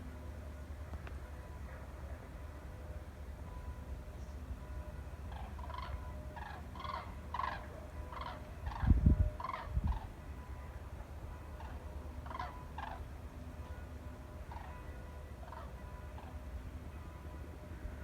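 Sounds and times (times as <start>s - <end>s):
birds honking in flight: 5.2s - 10.2s, 11.6s - 13.1s, 14.4s - 16.4s.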